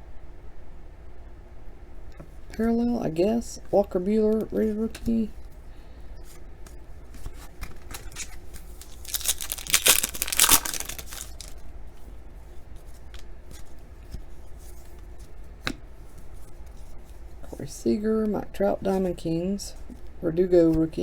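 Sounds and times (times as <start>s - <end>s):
cards clicking and rustling: 7.2s - 11.6s
foil wrapper tearing: 7.9s - 11.6s.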